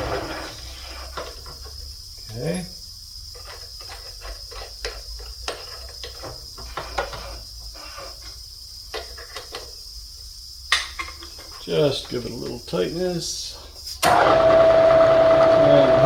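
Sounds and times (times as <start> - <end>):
workshop hum: 0.0 - 2.7, 10.6 - 16.0.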